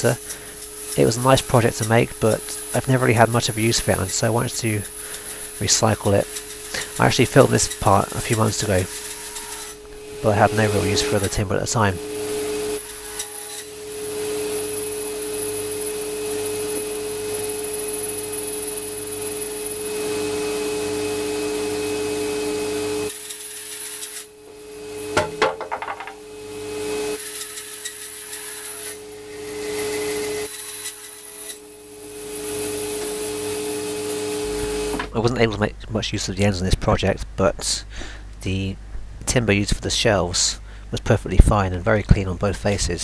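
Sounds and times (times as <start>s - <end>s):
power tool cutting wood: 0.0s - 35.2s
sharp knocks: 25.2s - 26.2s.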